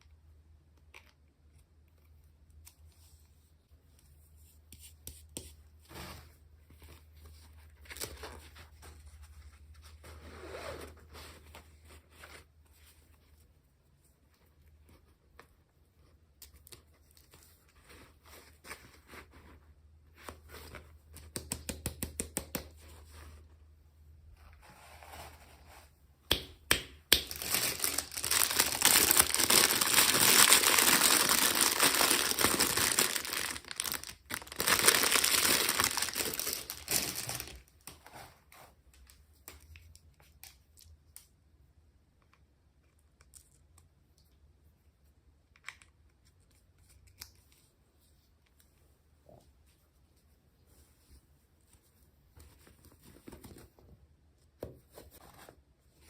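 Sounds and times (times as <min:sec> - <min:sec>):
packaging crinkling and tearing: 0:27.2 - 0:37.9.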